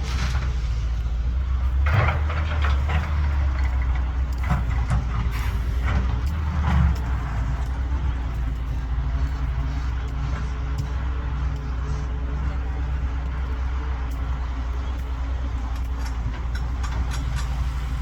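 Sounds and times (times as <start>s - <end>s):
diesel engine running: 0.0s - 18.0s
metallic clanks and knocks: 15.5s - 18.0s.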